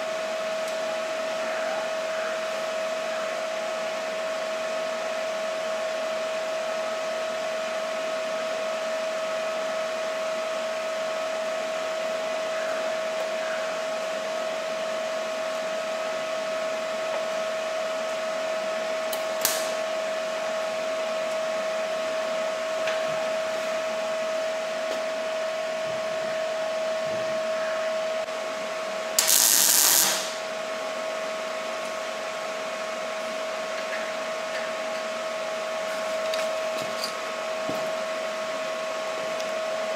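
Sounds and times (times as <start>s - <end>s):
machine whirring with hum: 0.0s - 39.9s
loud hissing burst: 29.2s - 30.5s.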